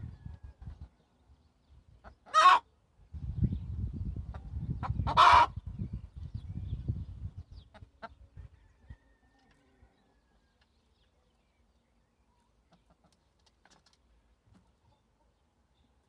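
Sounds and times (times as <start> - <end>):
hen clucking: 2.0 - 2.7, 4.3 - 5.7, 7.6 - 8.6.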